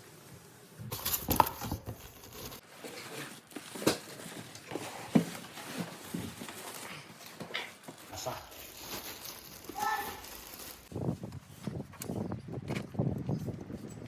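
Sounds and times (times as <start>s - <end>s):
umbrella fabric rustling: 0.9s - 2.6s, 7.8s - 10.9s.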